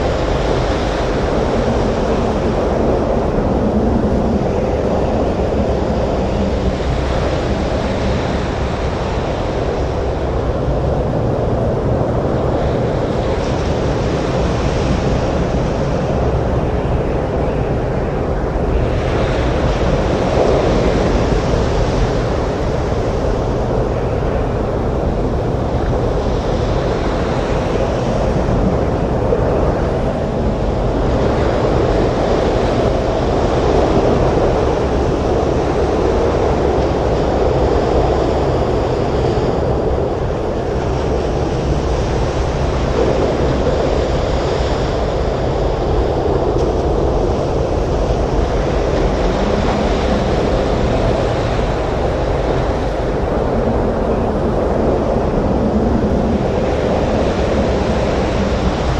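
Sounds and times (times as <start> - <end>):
breaking surf: 0.0 - 58.9
storm wind: 0.0 - 58.9.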